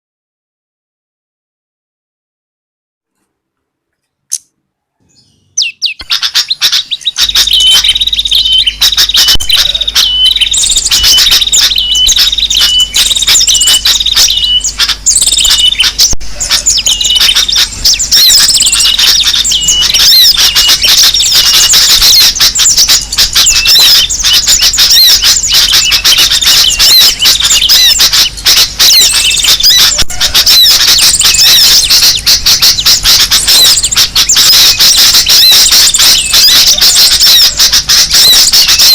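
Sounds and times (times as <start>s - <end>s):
chorus of small birds chirping: 5.0s - 38.9s.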